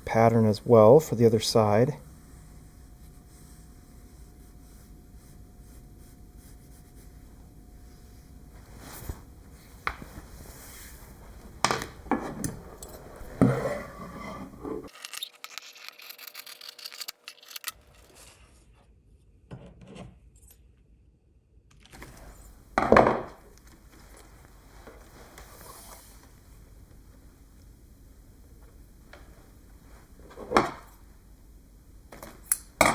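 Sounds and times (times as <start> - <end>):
material rubbing and scraping: 14.9 - 18.2.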